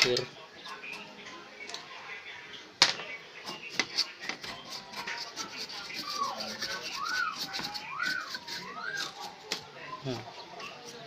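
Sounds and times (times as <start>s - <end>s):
brush scrubbing circuit board: 3.5s - 9.7s.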